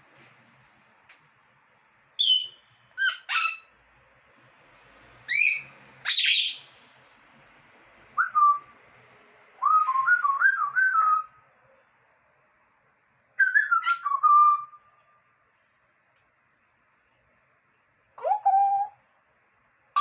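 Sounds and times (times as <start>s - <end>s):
parrot whistling calls: 2.2s - 3.7s, 5.3s - 6.7s, 8.2s - 8.7s, 13.4s - 14.8s.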